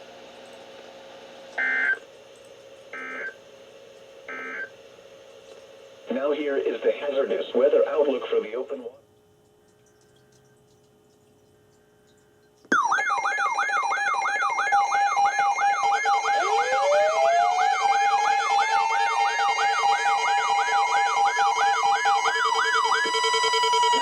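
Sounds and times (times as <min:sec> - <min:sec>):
siren winding up in pitch: 0:01.6 - 0:02.0, 0:03.0 - 0:03.4, 0:12.7 - 0:24.0
warbling siren tone: 0:12.7 - 0:24.0.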